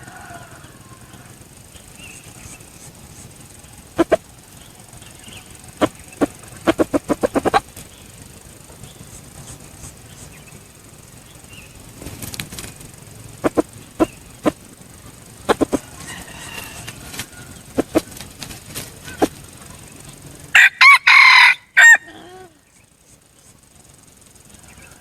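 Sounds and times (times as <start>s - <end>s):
bird wings clapping: 5.0s - 10.6s, 11.9s - 14.6s, 15.4s - 19.9s.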